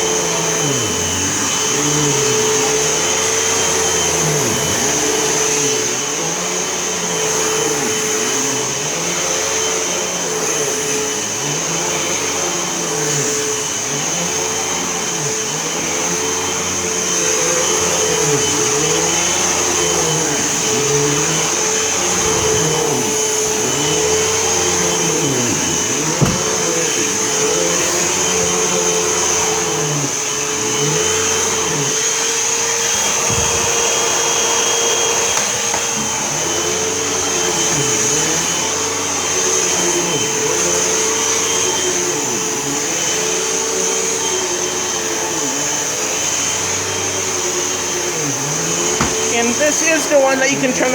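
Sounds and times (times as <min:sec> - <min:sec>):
upright vacuum cleaner running: 0:00.0 - 0:50.9
short knock: 0:26.2 - 0:26.7, 0:49.0 - 0:49.4.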